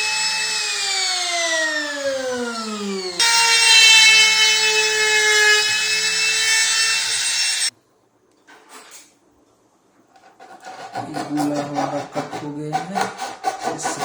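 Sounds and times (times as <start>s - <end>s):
power tool cutting wood: 0.0s - 7.7s.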